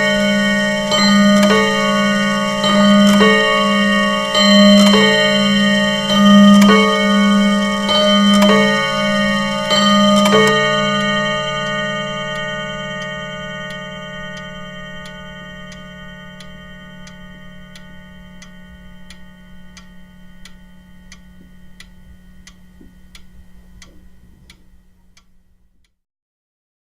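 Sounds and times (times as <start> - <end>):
chime ringing: 0.0 - 21.0
pendulum clock ticking: 0.0 - 26.0.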